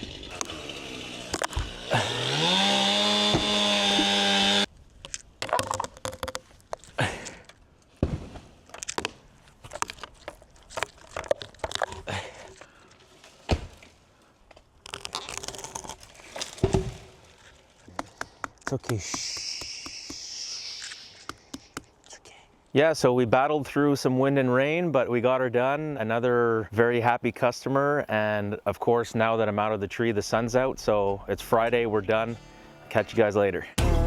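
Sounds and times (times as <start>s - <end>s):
chainsaw revving: 0.0s - 4.7s.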